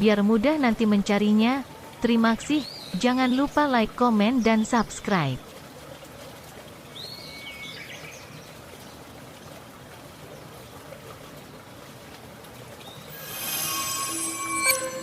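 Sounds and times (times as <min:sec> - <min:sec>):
running water rushing: 0:04.8 - 0:15.0
faint high chirps: 0:13.1 - 0:15.0
ringing of high tones: 0:13.1 - 0:15.0.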